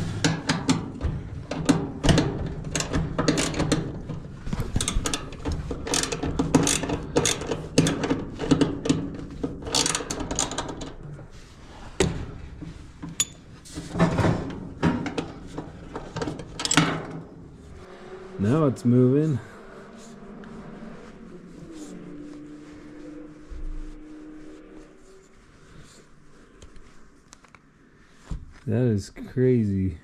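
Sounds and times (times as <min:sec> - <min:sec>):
metal clicks knocks and scraping: 0:00.0 - 0:11.2, 0:11.9 - 0:17.6.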